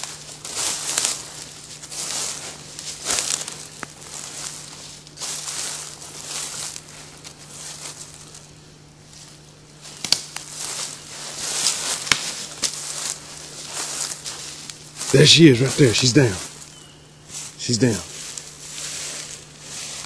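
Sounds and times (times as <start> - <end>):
footsteps crunching through dry leaves: 0.0 - 20.0
sharp twig cracks: 9.9 - 10.7, 11.6 - 13.2.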